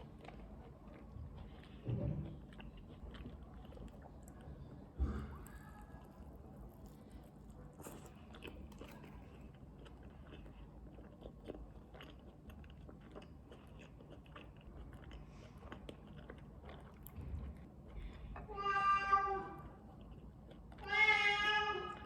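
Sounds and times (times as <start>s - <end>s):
person chewing food: 0.0s - 18.5s, 19.6s - 20.9s.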